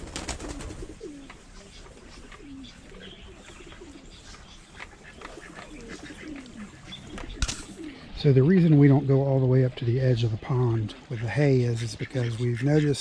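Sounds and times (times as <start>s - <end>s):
faint clicks and rustles: 0.0s - 8.0s
birds calling with falling notes: 0.0s - 13.0s.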